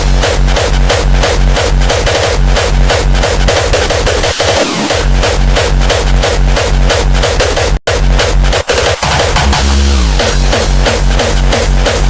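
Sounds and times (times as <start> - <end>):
distorted kick drums: 0.0 - 12.0
held low bass tone: 9.1 - 11.8.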